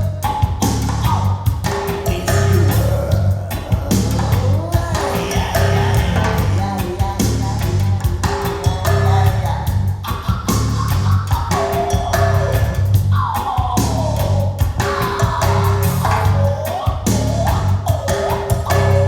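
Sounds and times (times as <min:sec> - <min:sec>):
drums: 0:00.0 - 0:19.0
pulsing bass: 0:00.0 - 0:19.0.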